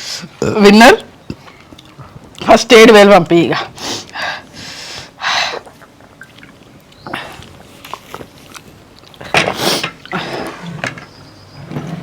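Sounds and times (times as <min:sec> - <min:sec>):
sharp breaths and sniffs: 0:03.8 - 0:05.7, 0:09.4 - 0:10.8.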